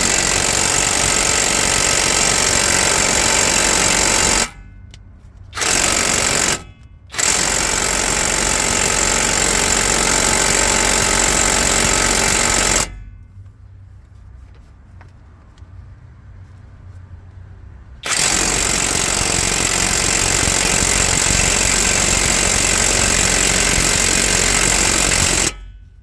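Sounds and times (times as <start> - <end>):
impact wrench hammering on nut: 0.0 - 4.8, 5.6 - 13.2, 18.0 - 25.8.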